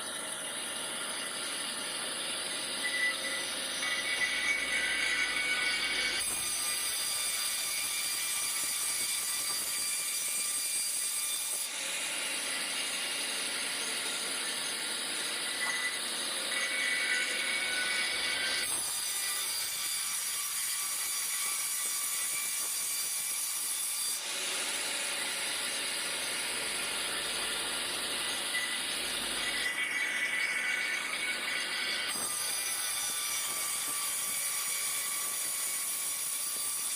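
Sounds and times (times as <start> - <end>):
saw cutting through log: 0.0 - 36.9.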